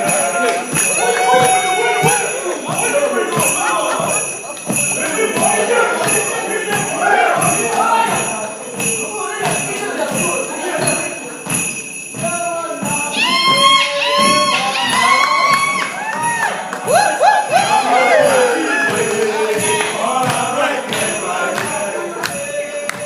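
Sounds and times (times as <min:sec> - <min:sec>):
steady jingling: 0:00.0 - 0:23.0
dance music: 0:12.6 - 0:23.0.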